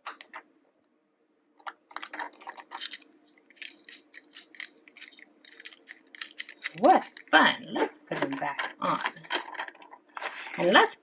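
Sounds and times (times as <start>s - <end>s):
plastic toys clicking together: 1.6s - 7.3s, 8.1s - 10.0s.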